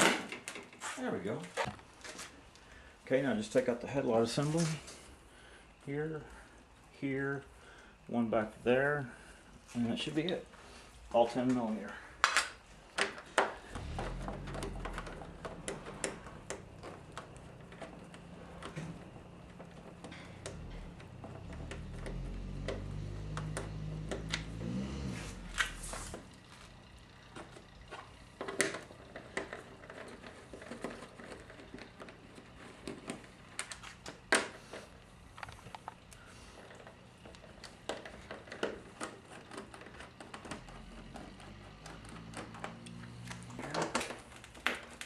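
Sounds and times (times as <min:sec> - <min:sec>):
hand tools clicking and knocking: 0:12.2 - 0:24.6, 0:27.2 - 0:45.0
low hum: 0:13.7 - 0:26.3
plastic and metal parts handled: 0:27.2 - 0:45.0.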